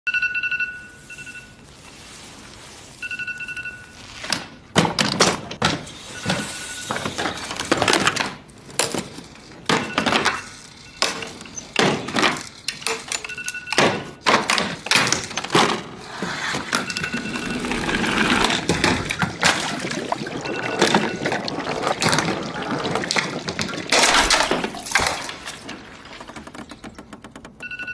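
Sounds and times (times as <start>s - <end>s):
phone alarm beeping: 0.1s - 4.6s, 5.8s - 8.0s, 9.4s - 24.5s, 27.6s - 27.9s.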